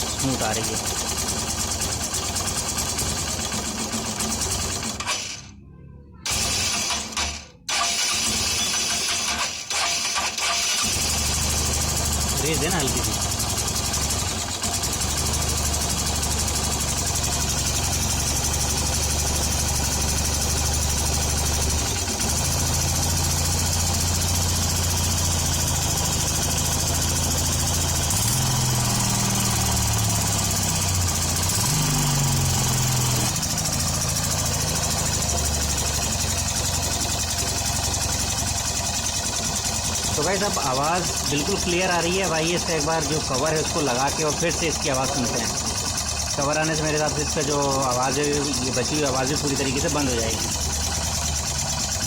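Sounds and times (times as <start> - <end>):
motorcycle engine idling: 0.0 - 52.0
engine revving: 6.3 - 52.0.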